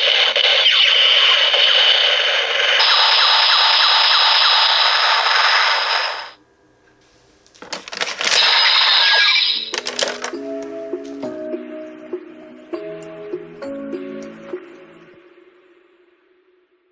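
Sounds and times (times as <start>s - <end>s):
toy belt hissing buzzing effect: 0.0s - 6.4s, 8.4s - 9.7s.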